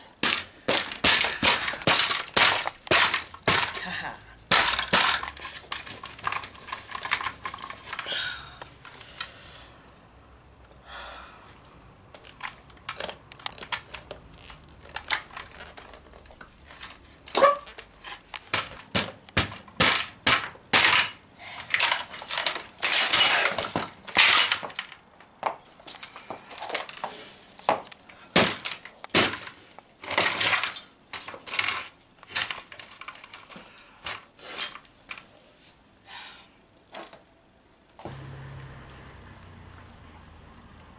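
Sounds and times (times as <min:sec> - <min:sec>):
plastic and metal parts breaking: 0:00.2 - 0:08.1, 0:12.2 - 0:25.0, 0:28.3 - 0:34.2.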